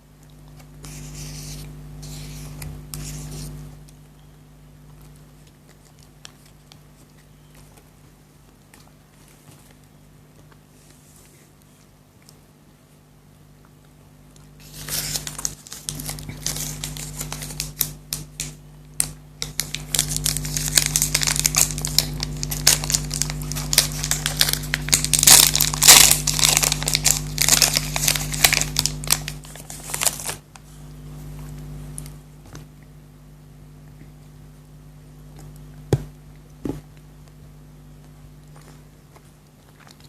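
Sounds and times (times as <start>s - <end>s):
wrapper crinkling and tearing: 14.6s - 30.4s.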